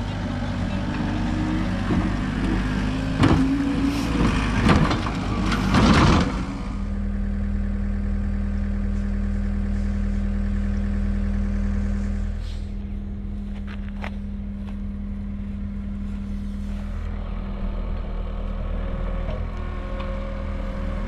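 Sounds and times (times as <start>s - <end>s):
large engine running: 0.0s - 21.0s
loud clanks and knocks: 3.1s - 6.5s.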